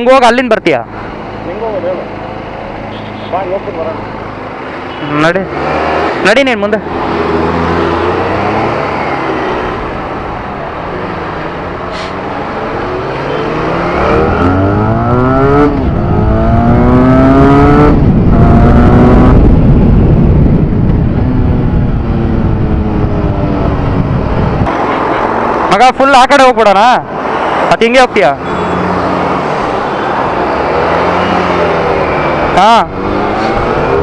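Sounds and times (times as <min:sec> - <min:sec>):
wind and road rush: 0:00.0 - 0:34.0
motorcycle engine accelerating: 0:12.4 - 0:24.7.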